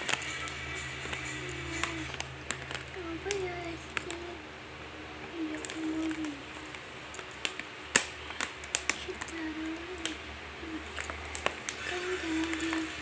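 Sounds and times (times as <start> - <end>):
faint voice-like hum: 0.3 - 4.5, 5.2 - 6.8, 8.9 - 13.0.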